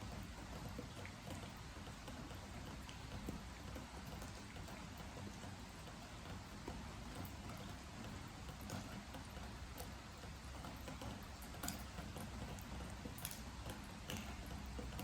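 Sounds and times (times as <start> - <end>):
water drops tapping on wood: 8.5 - 15.0.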